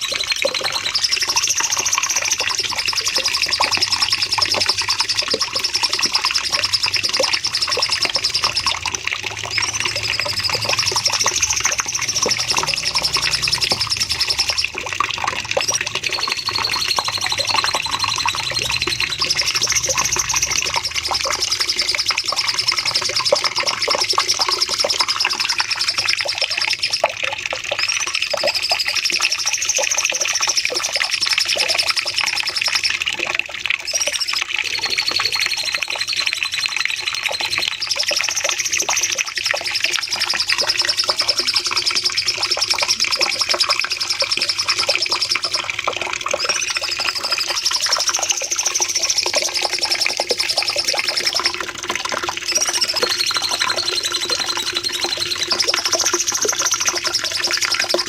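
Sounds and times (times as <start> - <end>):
bulbul singing rapid chattering: 0.0 - 33.0, 33.8 - 58.0.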